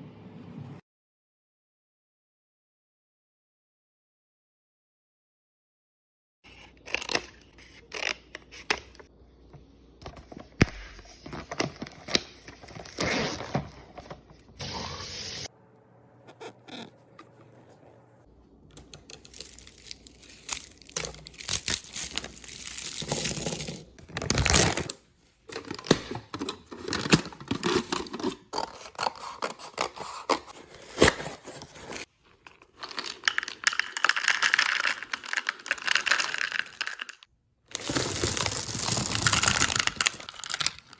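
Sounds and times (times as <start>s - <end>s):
packaging rustling and tearing: 19.2s - 37.0s, 37.7s - 40.9s
items clicking and knocking: 25.5s - 29.0s, 31.2s - 40.9s.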